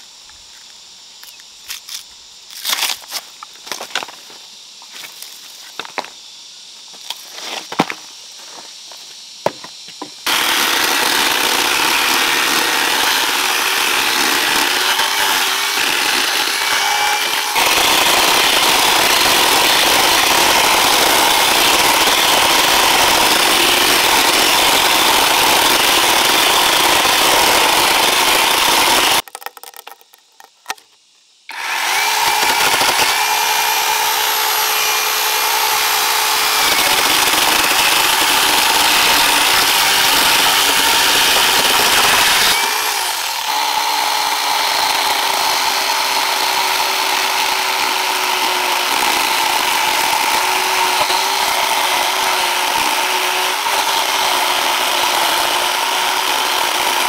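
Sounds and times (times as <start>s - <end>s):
power tool cutting: 10.2s - 29.2s, 31.5s - 57.0s.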